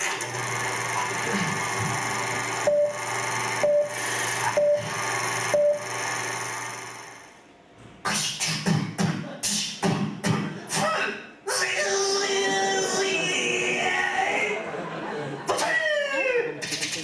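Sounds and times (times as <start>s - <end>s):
vocal beeps: 3.6s - 5.0s
choppy rhythmic vocal noises: 8.1s - 17.0s.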